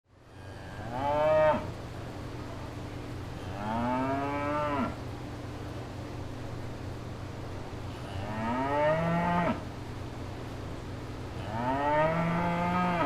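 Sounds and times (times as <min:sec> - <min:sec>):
steady low hum: 0:00.1 - 0:13.0
cattle mooing: 0:03.5 - 0:05.0, 0:11.4 - 0:13.0.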